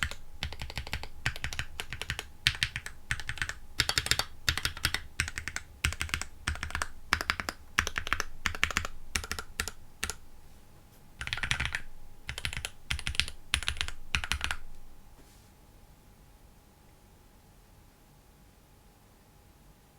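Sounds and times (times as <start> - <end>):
mechanical keyboard typing: 0.0 - 10.3, 11.2 - 14.8.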